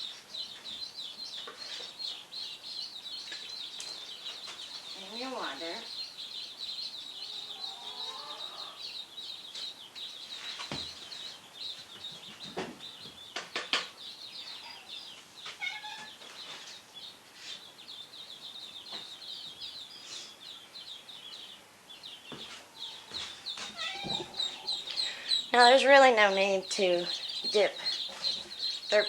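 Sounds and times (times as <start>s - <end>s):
ducklings peeping: 0.0s - 29.0s
sharp knocks and clatters: 12.2s - 14.0s.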